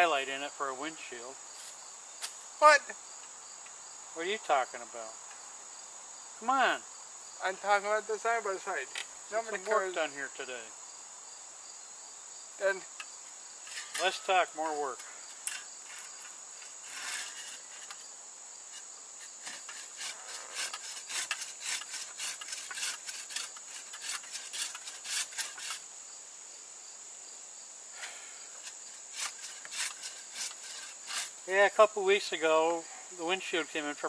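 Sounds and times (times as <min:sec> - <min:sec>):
insects trilling: 0:00.0 - 0:34.0
hand saw rasping through wood: 0:19.2 - 0:25.8, 0:28.6 - 0:31.4.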